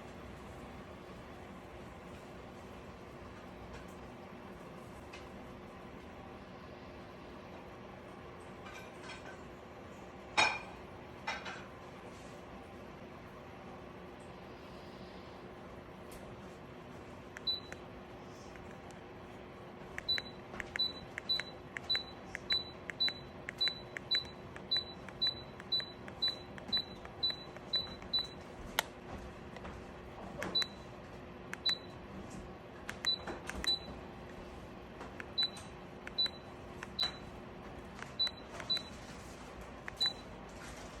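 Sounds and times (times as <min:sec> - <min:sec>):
faint steady hum: 0:00.0 - 0:41.0.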